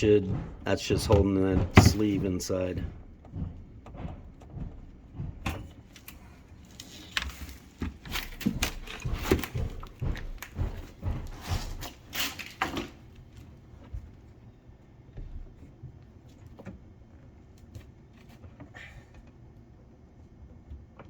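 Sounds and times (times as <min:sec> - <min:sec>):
hands knocking and scraping at hose: 0:00.0 - 0:14.2.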